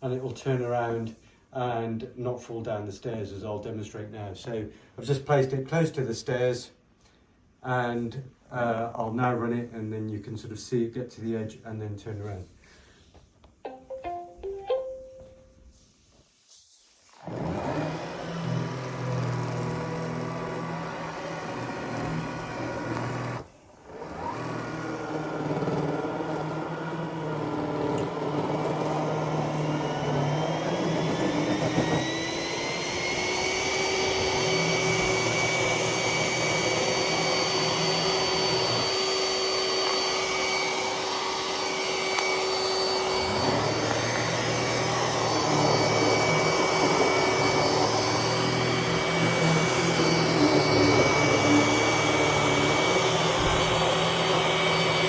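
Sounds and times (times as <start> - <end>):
robot vacuum motor whine: 17.0 - 55.0.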